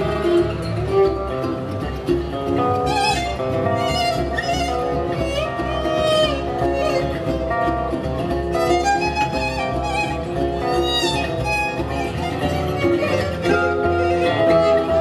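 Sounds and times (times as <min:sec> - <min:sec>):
guitar accompaniment: 0:00.0 - 0:15.0
violin melody: 0:00.0 - 0:15.0.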